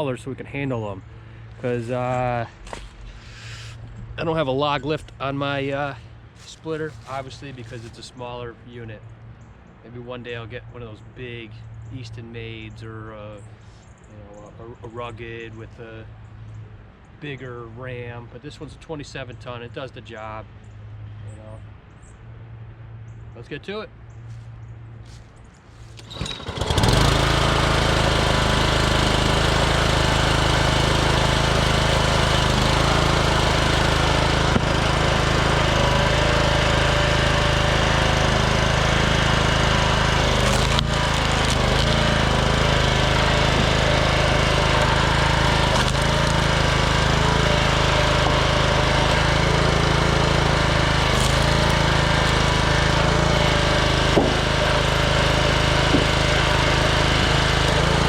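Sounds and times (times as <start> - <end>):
small gas engine running: 1.1 - 4.5, 5.4 - 8.1, 25.8 - 58.0.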